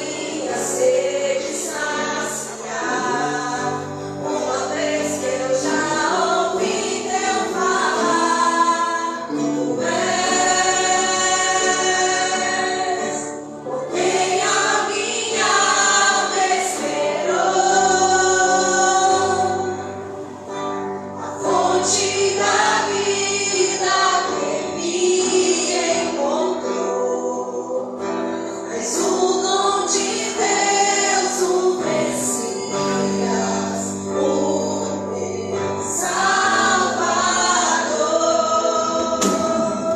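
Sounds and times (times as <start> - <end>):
singers holding long phrases: 0.0 - 20.2, 21.2 - 39.9
band accompaniment: 38.8 - 39.9.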